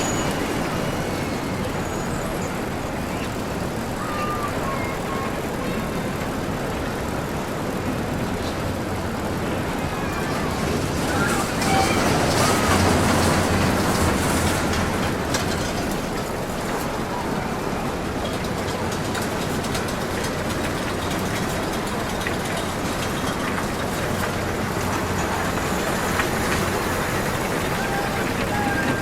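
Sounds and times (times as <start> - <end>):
ride cars clattering along track: 0.0 - 29.0.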